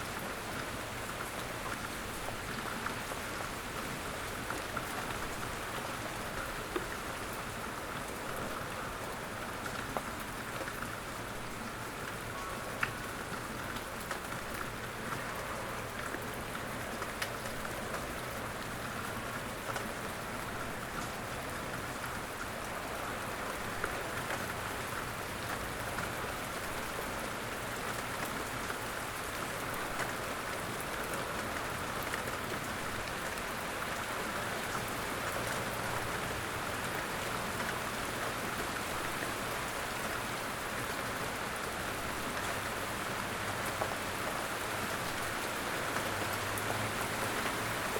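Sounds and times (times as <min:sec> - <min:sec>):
rain pattering on surfaces: 0:00.0 - 0:47.9
raindrop ticks: 0:12.0 - 0:20.2.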